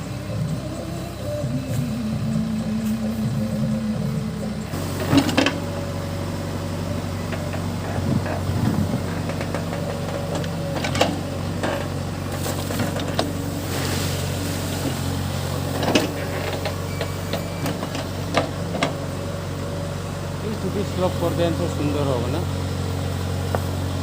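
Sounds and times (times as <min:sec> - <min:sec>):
diesel engine running: 0:00.0 - 0:24.0
sharp knocks and clanks: 0:07.2 - 0:13.3.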